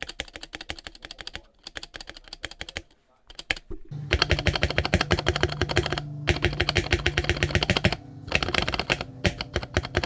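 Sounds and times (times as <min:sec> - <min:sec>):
mechanical keyboard typing: 0:00.0 - 0:10.0.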